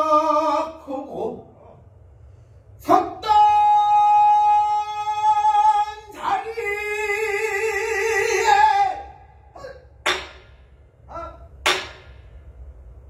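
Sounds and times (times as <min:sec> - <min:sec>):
person singing a long vibrato note: 0:02.8 - 0:09.8
sharp drum strokes: 0:10.0 - 0:10.7, 0:11.6 - 0:12.3.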